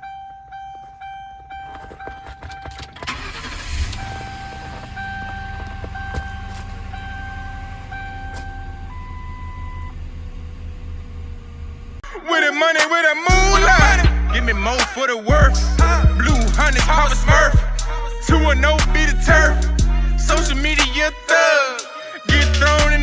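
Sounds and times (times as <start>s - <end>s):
car warning chime: 0.0s - 12.0s
car engine cranking and idling: 0.0s - 12.1s, 13.3s - 21.4s.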